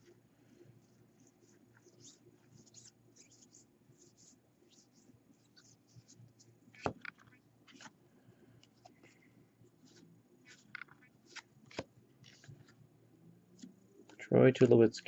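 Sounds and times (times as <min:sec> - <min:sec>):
trading cards being handled: 0:00.8 - 0:08.0, 0:08.6 - 0:12.8.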